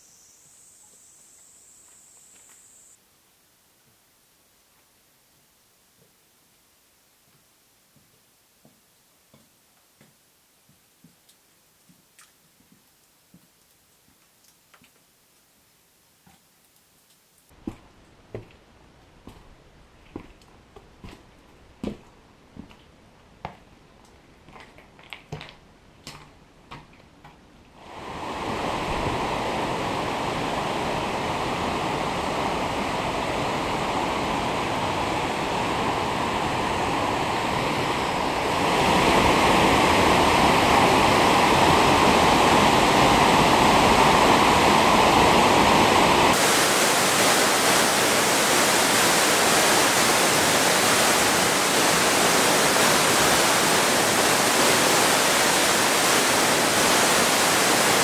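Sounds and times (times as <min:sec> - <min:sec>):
water rushing: 0:27.8 - 0:58.0.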